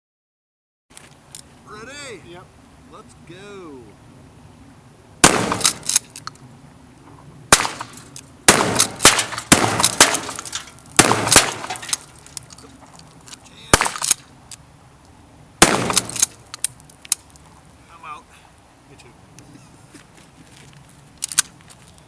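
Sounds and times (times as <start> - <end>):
gunshots: 5.2 - 6.0, 7.5 - 12.0, 13.7 - 14.2, 15.6 - 16.4.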